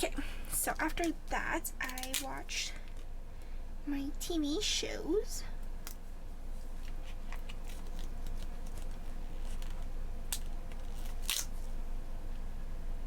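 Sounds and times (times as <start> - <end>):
paper crinkling and ticking: 0.0 - 3.1, 6.6 - 11.7.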